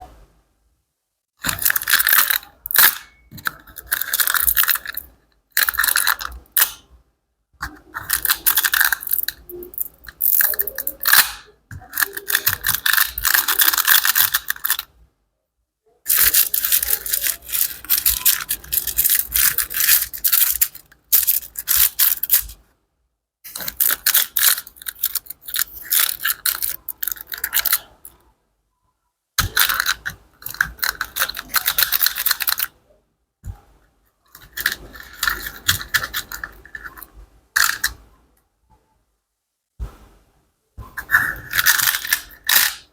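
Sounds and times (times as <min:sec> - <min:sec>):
crackling and scratching of material: 0:01.4 - 0:07.0, 0:07.6 - 0:15.0, 0:15.9 - 0:22.7, 0:23.4 - 0:28.3, 0:29.4 - 0:32.8, 0:33.4 - 0:39.0, 0:40.8 - 0:42.9.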